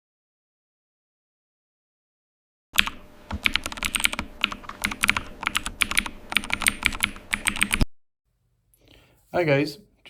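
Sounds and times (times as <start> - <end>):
rapid irregular clicking: 2.8 - 7.8.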